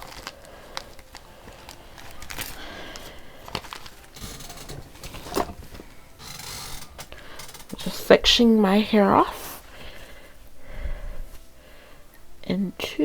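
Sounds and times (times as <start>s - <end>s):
hands rustling through hair: 0.0s - 6.3s.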